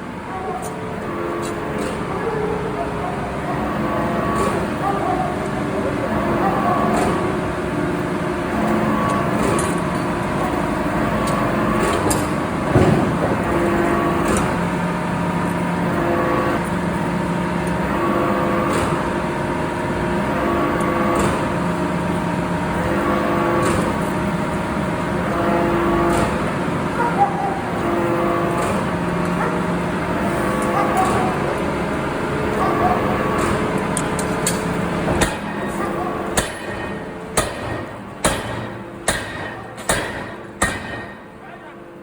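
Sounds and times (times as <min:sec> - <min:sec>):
forging machinery noise: 0:00.0 - 0:42.0
loud knock: 0:12.7 - 0:13.5.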